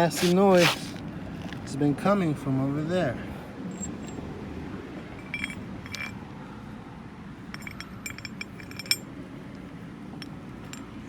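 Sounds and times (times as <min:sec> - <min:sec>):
metal parts and tools clinking: 0:05.2 - 0:06.2, 0:07.5 - 0:09.1.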